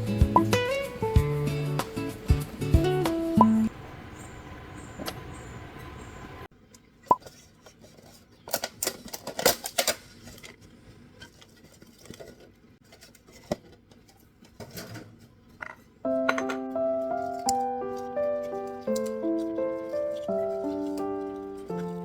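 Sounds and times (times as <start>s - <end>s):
soft background music: 0.0s - 3.7s, 16.1s - 22.0s
dishes and cutlery clinking: 14.6s - 22.0s.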